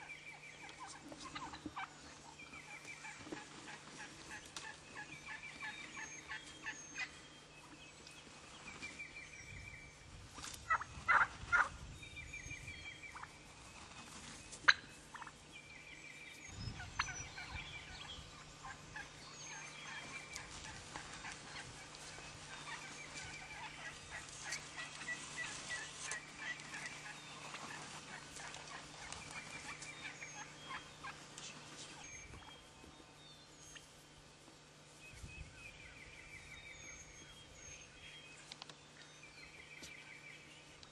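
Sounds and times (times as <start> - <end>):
turkeys gobbling: 0.0 - 9.1, 10.6 - 11.7, 12.8 - 15.9, 16.8 - 33.0.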